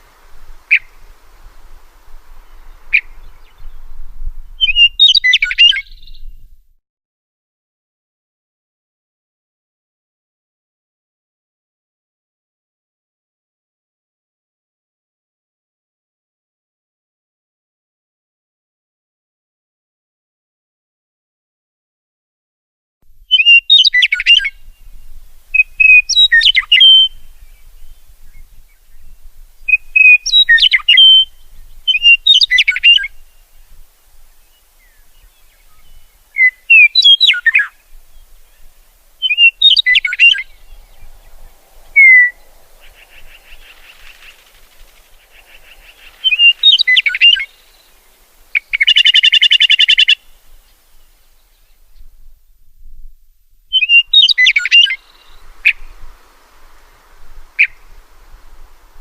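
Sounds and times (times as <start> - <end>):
harsh buzzy bird call: 0.0 - 3.5, 34.3 - 51.1, 53.7 - 59.0
songbirds singing: 0.0 - 6.5, 23.3 - 52.3, 53.7 - 59.0.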